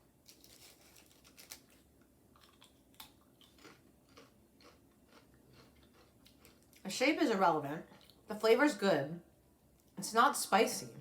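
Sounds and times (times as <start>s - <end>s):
crisp chip being chewed: 0.2s - 6.9s.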